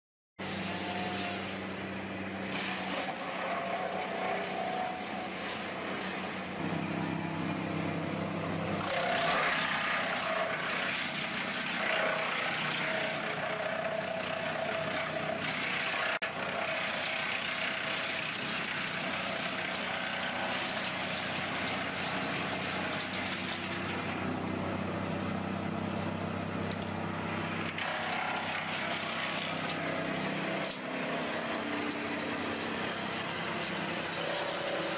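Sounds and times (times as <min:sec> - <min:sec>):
vehicle engines humming: 0:03.8 - 0:11.1.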